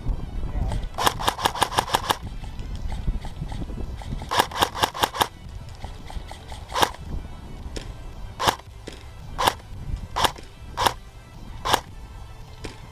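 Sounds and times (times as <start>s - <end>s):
airsoft gun firing: 1.0s - 2.3s, 4.2s - 5.4s, 6.4s - 7.0s, 8.4s - 9.6s, 10.2s - 11.0s, 11.6s - 11.9s.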